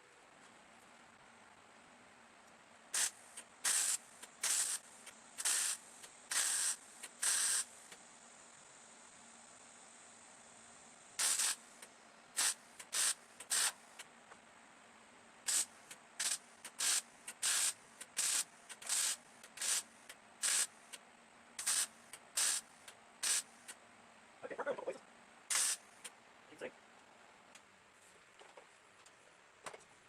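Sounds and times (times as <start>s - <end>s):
crackling tack welds: 2.9s - 8.0s, 11.2s - 14.1s, 15.4s - 21.0s, 21.6s - 23.8s, 25.5s - 26.2s.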